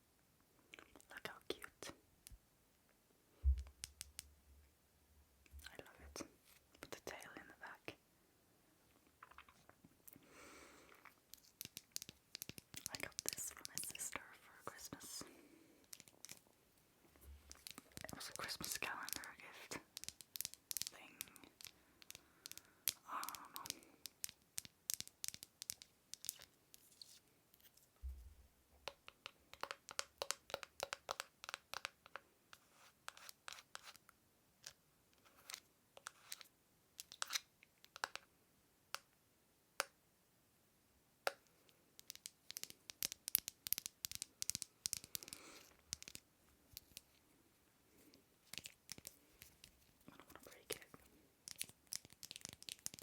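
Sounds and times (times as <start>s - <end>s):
tapping on small objects: 10.9s - 14.2s, 15.8s - 16.4s, 17.3s - 27.0s, 28.8s - 32.3s, 34.6s - 38.3s, 41.3s - 47.1s, 48.1s - 53.0s
sharp clicks and scratches: 17.5s - 27.8s, 42.0s - 47.1s, 48.4s - 53.0s.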